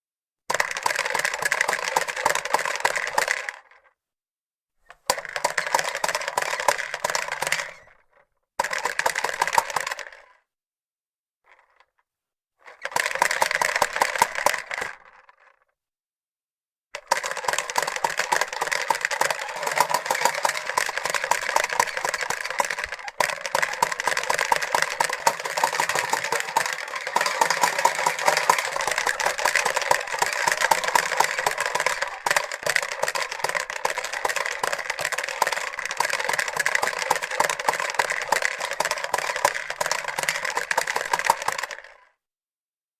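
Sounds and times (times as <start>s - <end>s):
toy balls popping and rattling: 0.5s - 3.8s, 4.9s - 8.0s, 8.6s - 10.3s, 12.7s - 15.5s, 17.0s - 42.1s.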